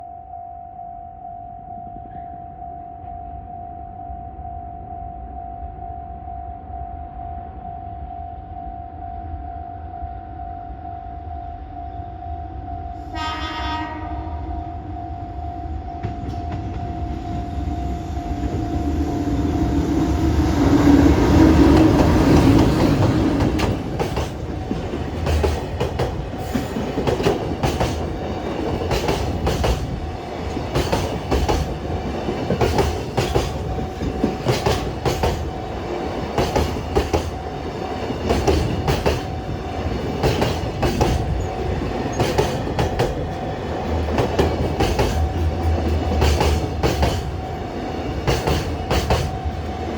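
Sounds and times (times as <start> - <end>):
electric locomotive passing: 1.9 - 49.9
locomotive horn: 13.0 - 15.3
wagon wheels clacking on rail joints: 20.7 - 49.9.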